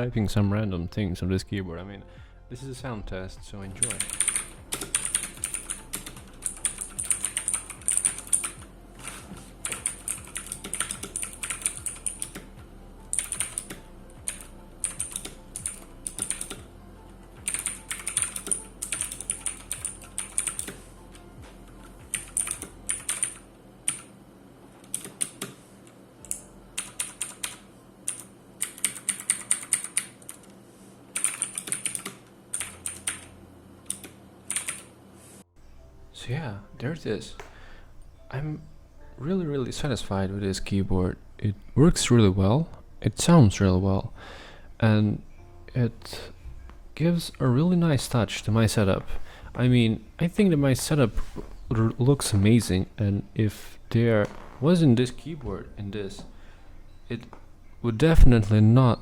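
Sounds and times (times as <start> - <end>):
mechanical keyboard typing: 3.8 - 12.5, 13.1 - 16.7, 17.4 - 20.8, 22.1 - 24.1, 24.8 - 25.6, 26.2 - 30.5, 31.2 - 33.3, 33.9 - 34.9.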